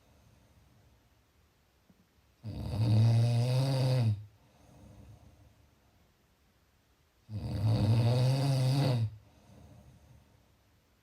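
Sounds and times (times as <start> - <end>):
loud low snore: 2.4 - 4.3, 7.3 - 9.2.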